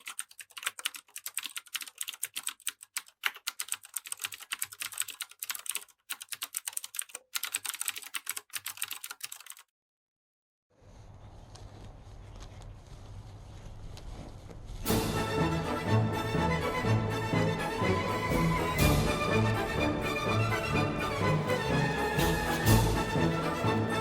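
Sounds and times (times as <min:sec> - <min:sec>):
typing on computer keyboard: 0:00.0 - 0:09.7.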